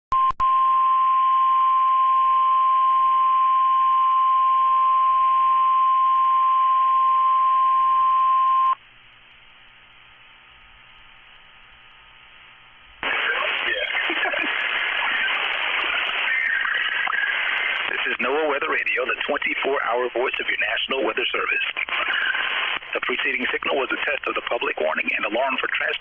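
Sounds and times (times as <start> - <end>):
faint radio hiss: 9.0 - 26.0.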